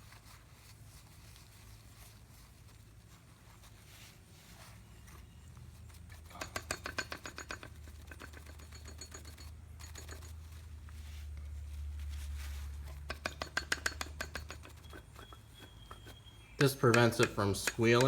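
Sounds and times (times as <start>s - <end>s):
sharp ringing ticks: 13.1s - 18.0s.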